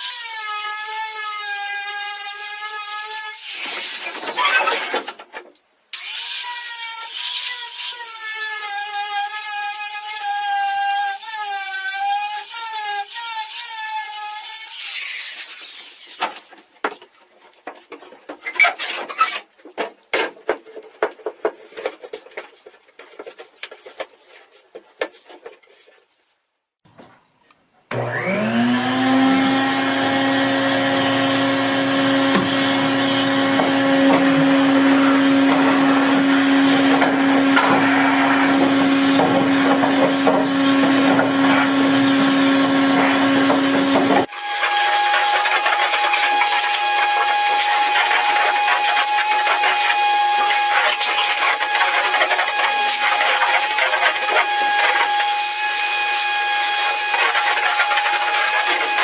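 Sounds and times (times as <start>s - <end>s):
power tool motor spinning: 28.0s - 59.0s.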